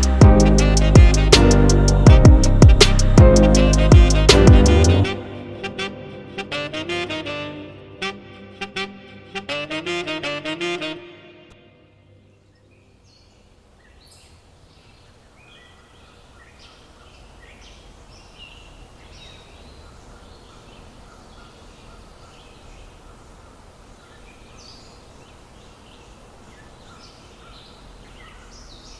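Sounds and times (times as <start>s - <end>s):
faint birds chirping: 11.9s - 28.9s.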